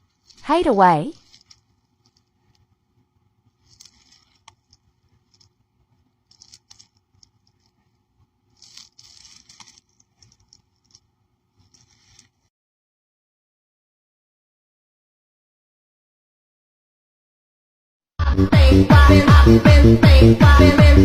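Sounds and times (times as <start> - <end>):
rustling and scraping: 0.0 - 0.5, 1.2 - 12.5.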